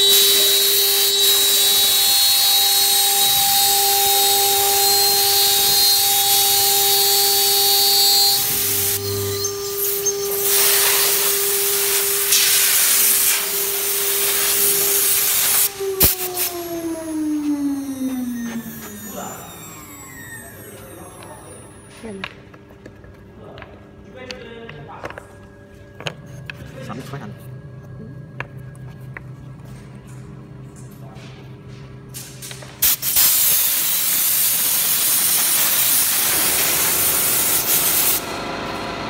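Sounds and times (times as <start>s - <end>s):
router bit cutting board: 0.0s - 22.0s
cnc router spindle whine: 0.0s - 23.2s, 33.8s - 39.0s.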